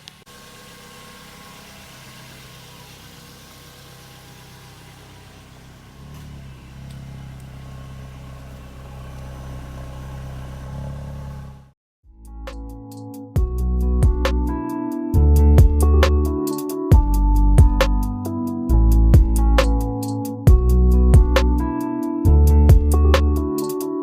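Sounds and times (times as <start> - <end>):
car engine idling: 0.0 - 11.8
electronic music: 12.3 - 24.0.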